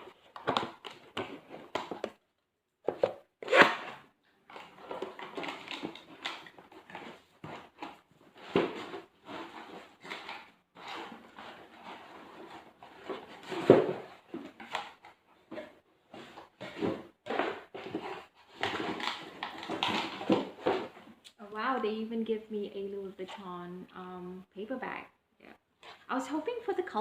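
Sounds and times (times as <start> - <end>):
paper and cardboard rustling: 2.8 - 21.2.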